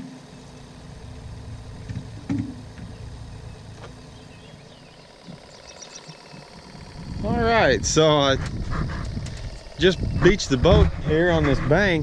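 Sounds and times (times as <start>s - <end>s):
low steady rumble: 0.0s - 12.0s
knocks and thumps of gear: 1.8s - 3.0s.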